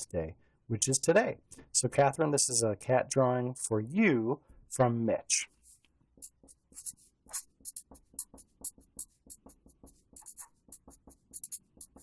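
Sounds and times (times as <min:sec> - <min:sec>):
marker pen scratching paper: 0:05.5 - 0:12.0.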